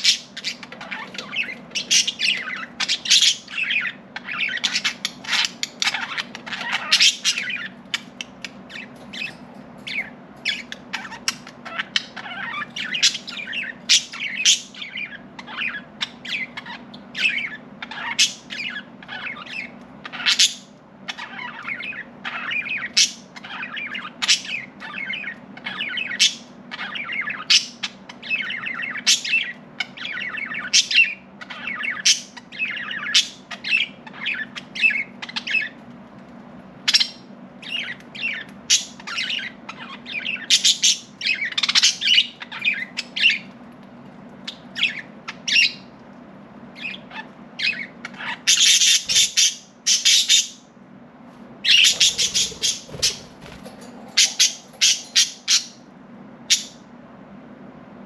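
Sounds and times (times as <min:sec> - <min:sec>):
harsh bird squawks: 0:00.0 - 0:35.8, 0:46.8 - 0:50.7, 0:51.6 - 0:56.9
budgerigars chirping: 0:00.0 - 0:35.9, 0:36.8 - 0:43.7, 0:44.4 - 0:46.0, 0:46.8 - 0:50.7, 0:51.6 - 0:56.9
faint low hum: 0:00.0 - 0:58.0.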